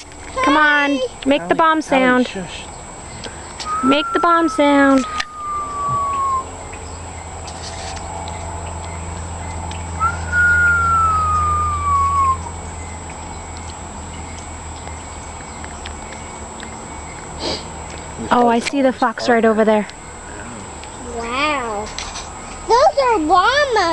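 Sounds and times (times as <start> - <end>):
steady low hum: 0.0 - 23.9
bird whistle sliding down: 3.6 - 6.6, 10.0 - 12.5.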